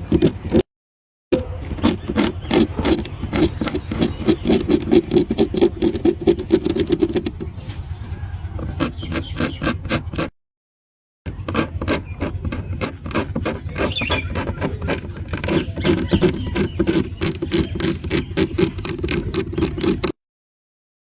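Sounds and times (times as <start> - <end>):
needle tapping and scraping candy: 0.0 - 0.6, 1.7 - 7.5, 11.3 - 20.1.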